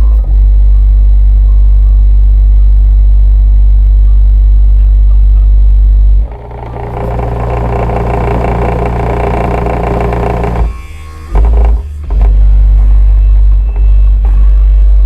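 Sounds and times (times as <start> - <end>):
bass-heavy music through subwoofer: 0.0 - 15.0.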